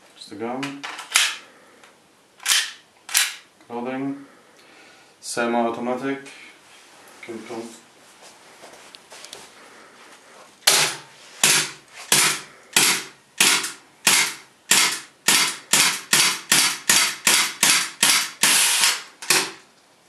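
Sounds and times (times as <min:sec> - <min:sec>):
airsoft pistol shots: 0:10.7 - 0:19.6.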